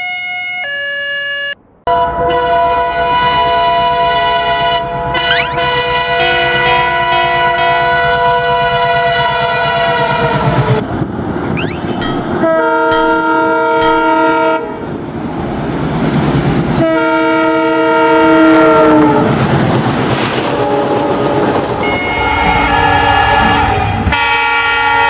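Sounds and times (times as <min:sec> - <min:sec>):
train horn blasts: 0:00.0 - 0:10.7, 0:12.4 - 0:14.9, 0:16.8 - 0:19.3, 0:21.9 - 0:25.0
train wheels clattering on rails: 0:08.0 - 0:14.4.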